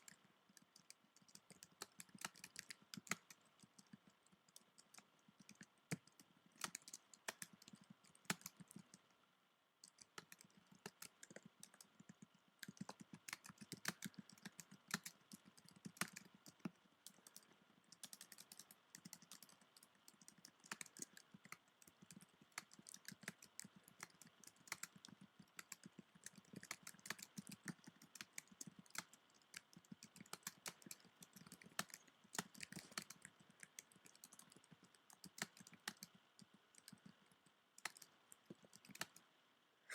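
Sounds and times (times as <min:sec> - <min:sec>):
computer keyboard typing: 0:00.0 - 0:09.0, 0:09.8 - 0:39.2.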